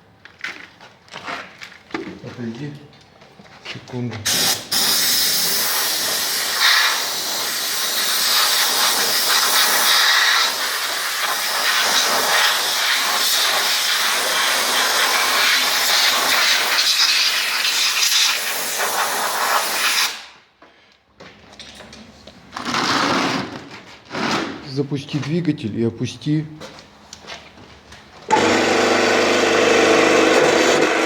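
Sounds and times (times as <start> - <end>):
loud hiss of spray jet: 4.3 - 20.4.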